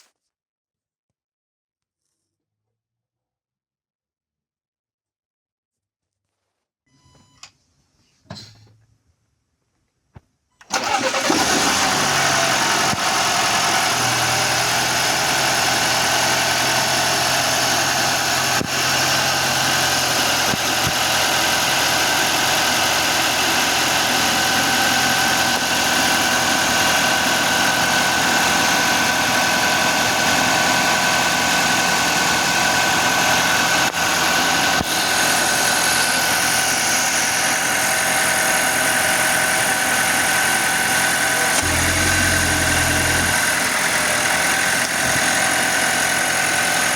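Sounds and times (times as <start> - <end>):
car engine idling: 10.7 - 46.9.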